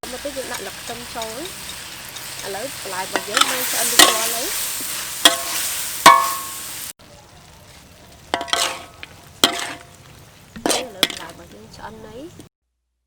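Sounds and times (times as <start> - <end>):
stir-fry sizzling in a hot pan: 0.0 - 12.5
utensil clanking on pan: 0.1 - 6.6, 8.2 - 12.0.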